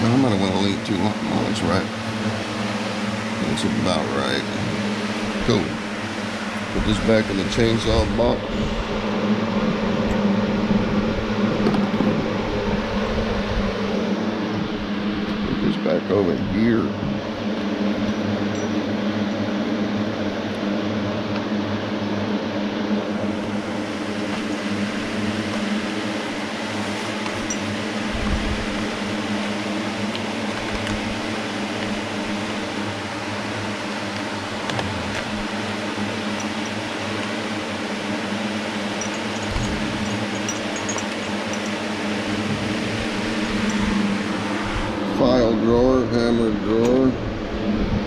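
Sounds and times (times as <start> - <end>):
electric fan hum: 0.0 - 48.0
small tools clicking and knocking: 27.2 - 27.8, 36.3 - 36.8, 38.9 - 41.9.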